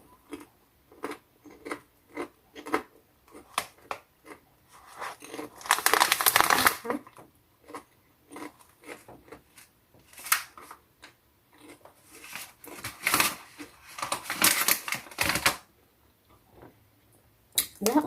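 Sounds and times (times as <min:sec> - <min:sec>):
crunching on a chip: 0:00.3 - 0:10.7.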